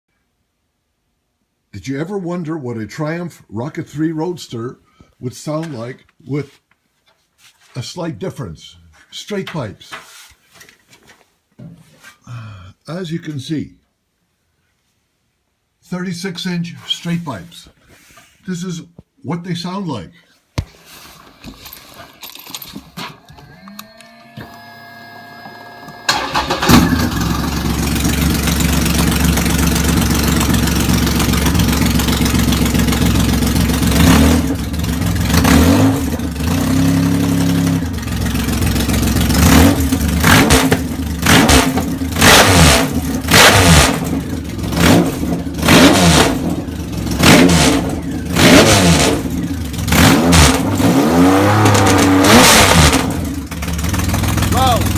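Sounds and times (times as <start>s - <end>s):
motorcycle engine starting: 22.9s - 54.9s
motorcycle engine revving: 26.1s - 54.9s
motorcycle engine idling: 26.9s - 35.3s, 37.9s - 40.2s, 53.3s - 54.9s.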